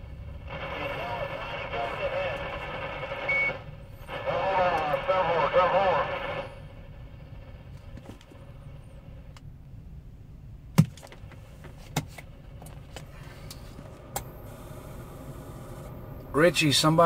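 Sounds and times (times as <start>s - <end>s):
radio background noise: 0.4s - 6.7s.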